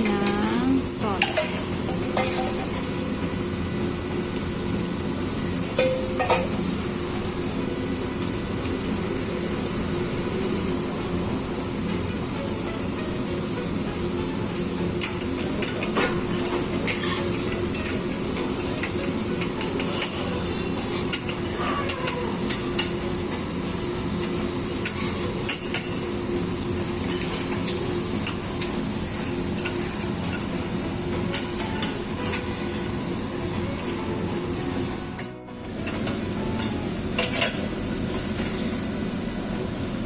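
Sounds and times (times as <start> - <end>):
food sizzling in a wok: 0.0 - 40.0
steady hum: 0.0 - 40.0
metal spatula scraping: 16.9 - 18.0.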